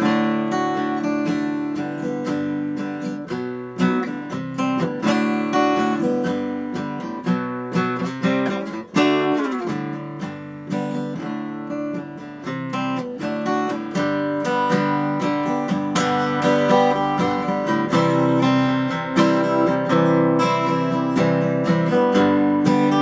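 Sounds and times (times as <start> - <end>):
acoustic guitar playing: 0.0 - 23.0.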